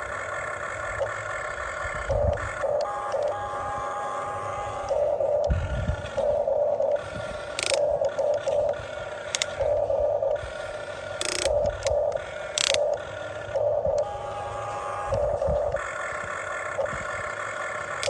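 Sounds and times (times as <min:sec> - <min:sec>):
small electric motors whirring: 0:00.0 - 0:18.0
sharp clicks: 0:04.8 - 0:14.1.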